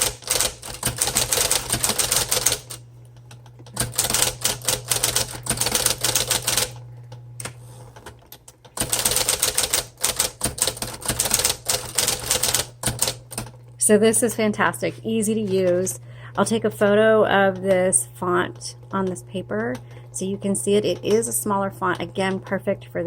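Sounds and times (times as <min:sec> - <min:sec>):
typewriter keystrokes: 0:00.0 - 0:02.8, 0:03.7 - 0:06.8, 0:08.0 - 0:13.6
steady low hum: 0:00.0 - 0:23.0.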